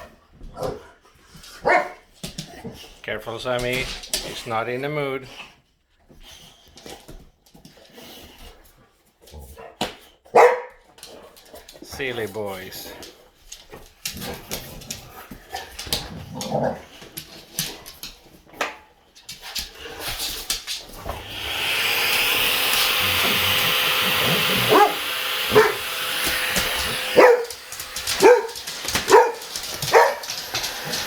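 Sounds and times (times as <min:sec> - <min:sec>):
dogs barking: 0:01.6 - 0:02.0, 0:10.3 - 0:10.8, 0:23.0 - 0:31.0
vacuum cleaner running: 0:20.9 - 0:31.0.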